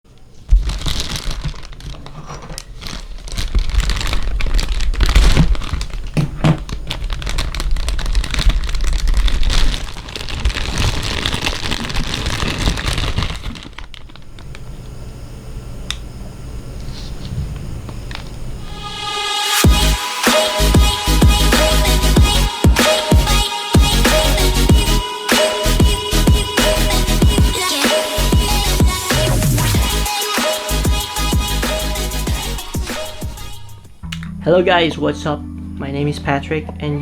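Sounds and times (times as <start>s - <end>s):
plastic packaging crinkling: 0.1s - 15.0s.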